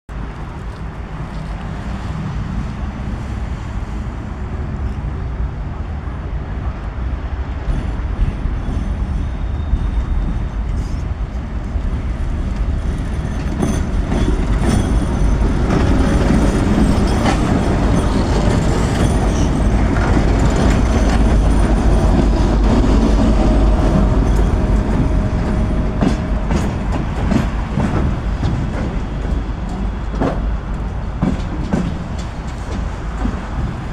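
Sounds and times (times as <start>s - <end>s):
train rumbling past: 0.1s - 33.9s
wheels clacking over rail joints: 11.4s - 33.9s.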